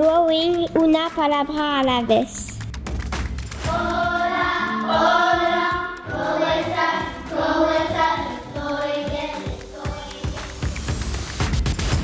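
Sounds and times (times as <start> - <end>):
backing music: 0.0 - 12.0
children singing: 3.7 - 10.7.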